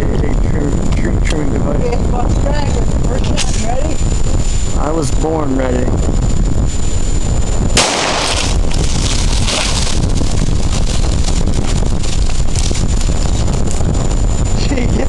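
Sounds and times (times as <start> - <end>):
wind buffeting microphone: 0.0 - 15.0
rifle shot: 7.8 - 8.7.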